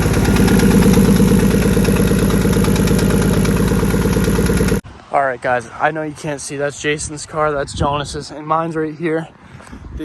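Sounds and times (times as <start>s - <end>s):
car engine running: 0.0s - 4.8s.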